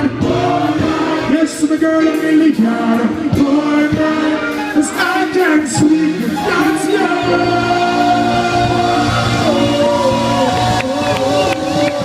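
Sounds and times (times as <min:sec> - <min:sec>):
live reggae band: 0:00.0 - 0:12.0
person singing: 0:00.0 - 0:12.0.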